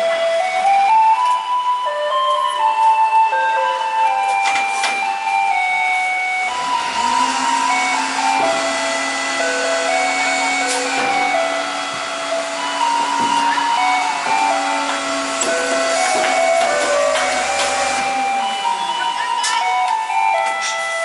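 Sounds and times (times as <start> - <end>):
garbage truck compactor humming: 4.4 - 20.8
loudspeaker melody: 5.6 - 20.2.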